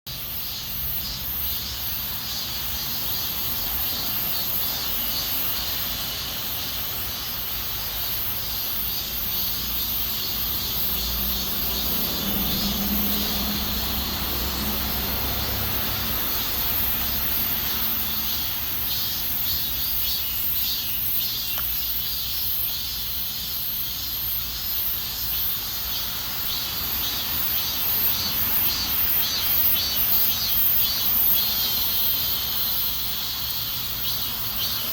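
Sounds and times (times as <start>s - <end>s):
insects singing: 0.1s - 34.9s
distant engine hum: 9.1s - 20.1s.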